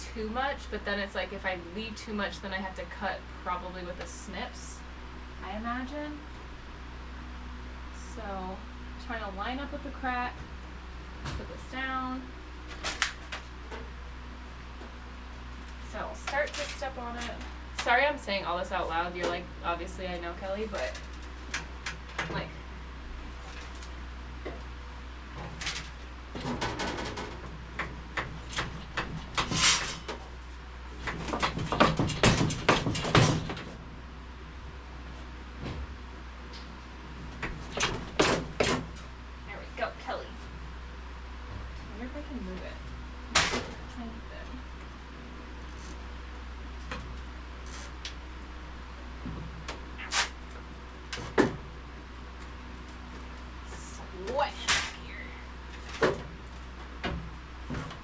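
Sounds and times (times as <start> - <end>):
steady low hum: 0.0 - 58.0
sheet-metal shear clanking: 25.4 - 33.8
sheet metal knocks and clanks: 31.0 - 33.7.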